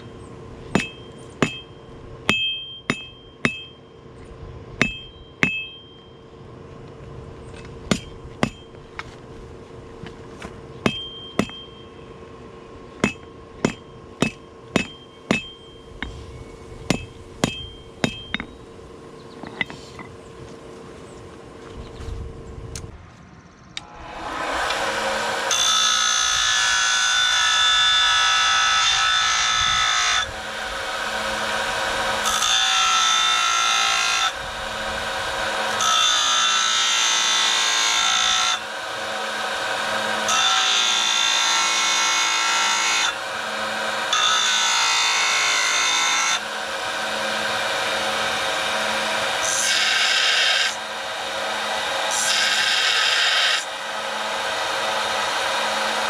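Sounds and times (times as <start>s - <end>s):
electric grinder grinding steel: 23.8s - 56.0s.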